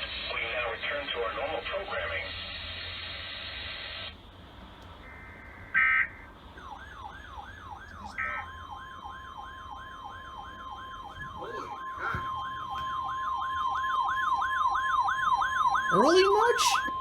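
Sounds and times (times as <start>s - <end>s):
steady warning alarm tone: 0.0s - 17.0s
alert siren wailing: 5.0s - 17.0s.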